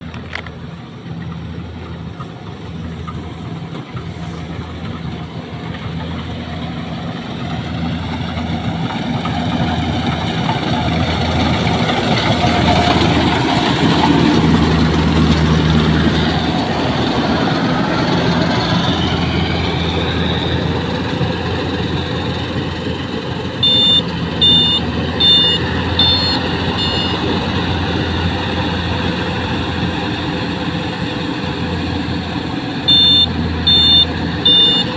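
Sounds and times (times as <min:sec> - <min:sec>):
harvester engine running: 0:00.0 - 0:34.9
short high-pitched beeps: 0:23.6 - 0:27.3, 0:32.9 - 0:34.9.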